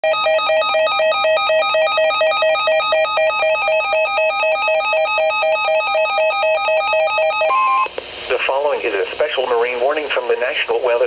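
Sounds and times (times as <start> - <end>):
warbling electronic alert tone: 0.0 - 7.9.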